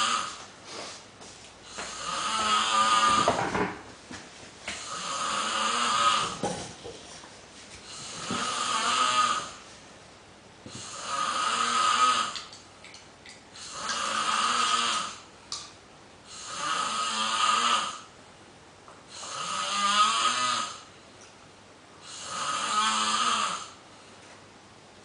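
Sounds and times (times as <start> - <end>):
person snoring: 0.0 - 0.4, 1.6 - 3.4, 4.8 - 6.4, 7.8 - 9.6, 10.7 - 12.4, 13.6 - 15.2, 16.3 - 18.1, 19.1 - 20.9, 22.0 - 23.8.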